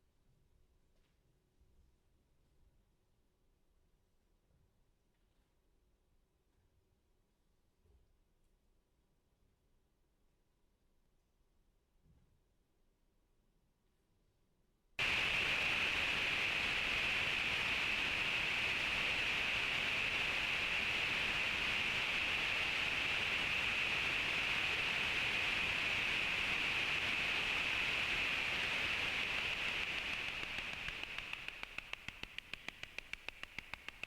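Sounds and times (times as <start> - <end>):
electronic noise hiss: 15.0 - 34.0.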